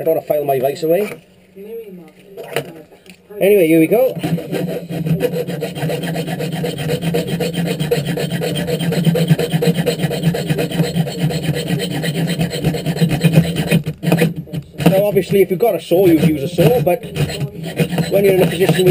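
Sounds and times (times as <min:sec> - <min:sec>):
file rasping on steel bolt: 0:04.2 - 0:15.4, 0:16.0 - 0:18.9.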